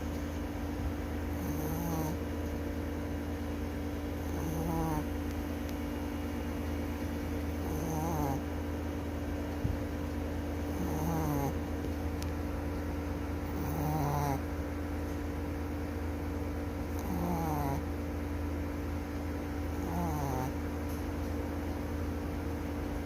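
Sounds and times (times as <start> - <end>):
steady low hum: 0.0 - 23.0
small dog snoring: 1.3 - 2.3, 4.1 - 5.3, 7.5 - 8.6, 10.6 - 11.7, 13.4 - 14.5, 16.8 - 17.9, 19.7 - 20.6.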